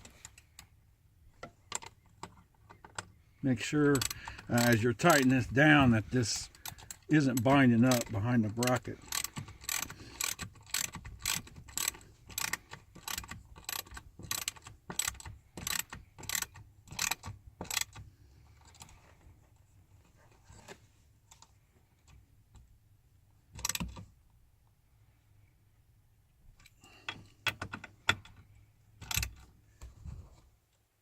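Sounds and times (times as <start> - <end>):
hand ratchet clicking: 3.9 - 5.8, 6.5 - 18.0, 23.6 - 24.0, 29.0 - 29.4.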